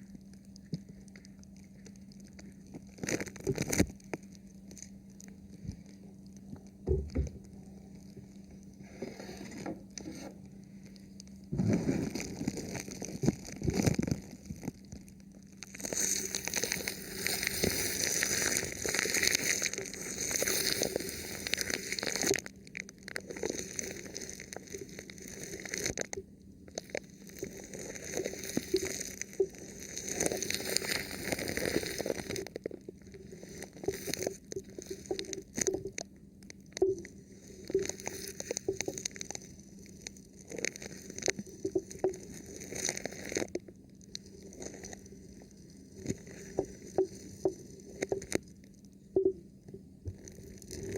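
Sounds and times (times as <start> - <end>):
plastic film crinkling on microphone: 0.0 - 49.3, 50.0 - 50.9.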